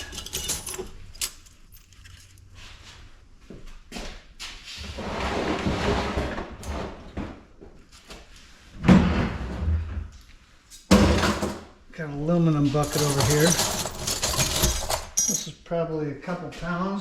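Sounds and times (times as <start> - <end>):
metal scraping and sliding: 0.0 - 3.0, 12.5 - 15.5.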